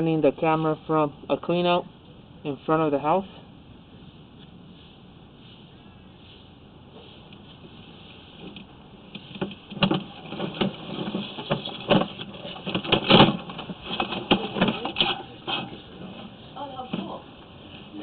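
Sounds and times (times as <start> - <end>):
camera knocking and scraping in pipe: 8.1 - 17.2.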